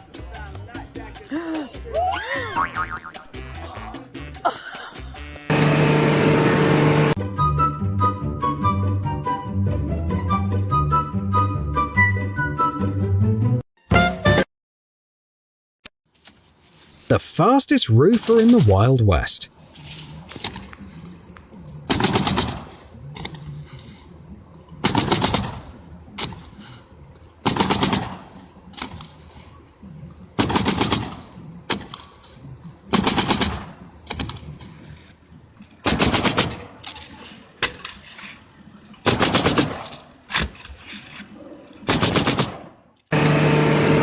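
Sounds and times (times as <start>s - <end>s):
nail gun firing rapid bursts: 21.9s - 22.8s, 24.8s - 25.6s, 27.4s - 28.3s, 30.4s - 31.2s, 32.9s - 34.2s, 35.8s - 36.7s, 39.0s - 40.0s, 41.9s - 42.7s.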